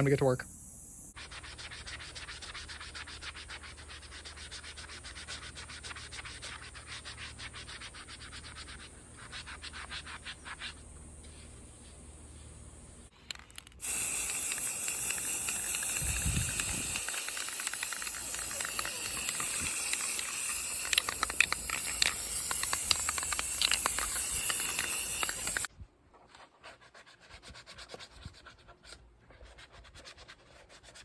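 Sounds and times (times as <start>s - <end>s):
sandpaper on plastic: 1.2s - 12.5s, 13.8s - 31.0s
aerosol spray can hissing: 13.8s - 25.7s.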